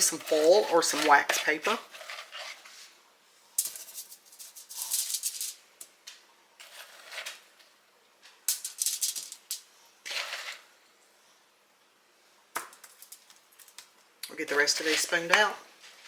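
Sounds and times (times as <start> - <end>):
metal spoon scraping a bowl: 0.0 - 2.8, 6.6 - 7.5, 10.0 - 10.8, 14.5 - 15.4.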